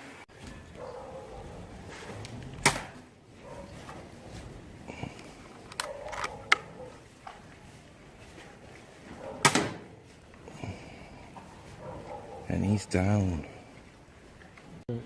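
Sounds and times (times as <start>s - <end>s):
air rifle shot: 2.6s - 3.0s, 9.4s - 9.9s.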